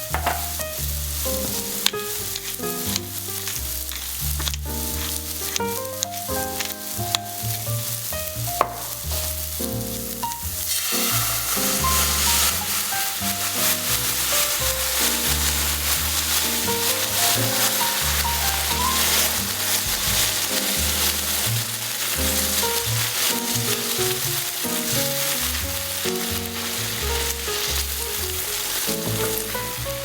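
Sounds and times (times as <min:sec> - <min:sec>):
food sizzling in a pan: 0:00.0 - 0:30.0
soft background music: 0:00.0 - 0:30.0
stirring: 0:10.5 - 0:30.0.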